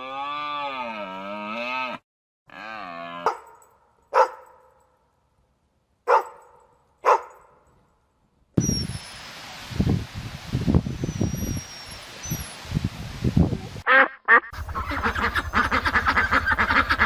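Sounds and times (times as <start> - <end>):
dog barking: 3.2 - 4.8, 6.1 - 7.6
faint high bird chirps: 8.6 - 9.2, 11.0 - 12.6.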